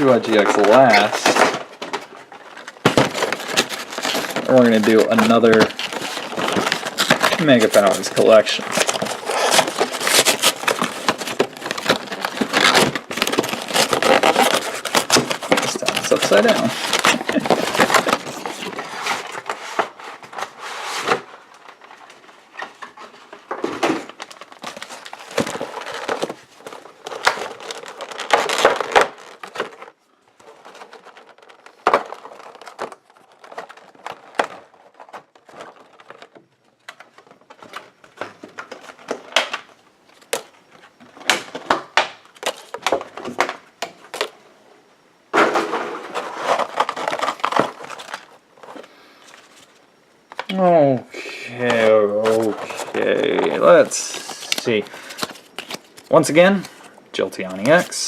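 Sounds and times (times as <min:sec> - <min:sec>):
packaging rustling: 0:00.0 - 0:44.4, 0:45.4 - 0:50.5, 0:51.5 - 0:58.0
cardboard box being handled: 0:00.4 - 0:21.3.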